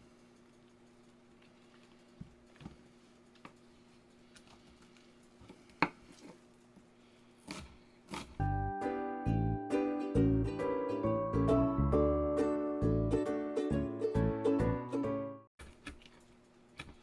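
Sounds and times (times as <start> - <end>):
faint steady hum: 0.0 - 8.4
plucked-string background music: 8.4 - 15.5.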